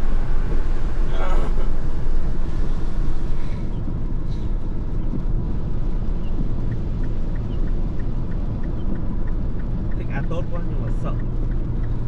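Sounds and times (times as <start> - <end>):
engine and road rumble in cabin: 0.0 - 12.0
light regular ticking: 5.0 - 12.0.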